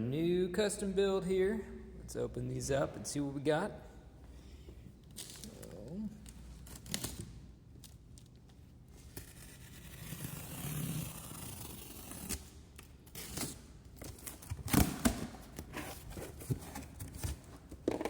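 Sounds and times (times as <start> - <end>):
tape being cut and torn: 5.1 - 15.8
cardboard scraping and rustling: 13.4 - 18.0.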